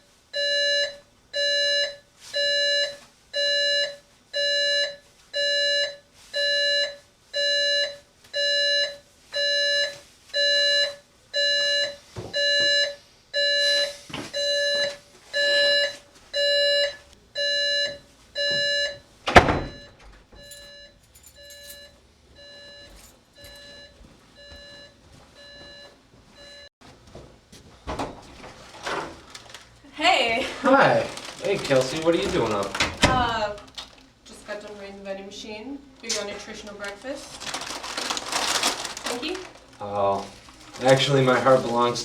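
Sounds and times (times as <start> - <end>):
alarm clock beeping: 0.3 - 19.0, 19.6 - 26.7.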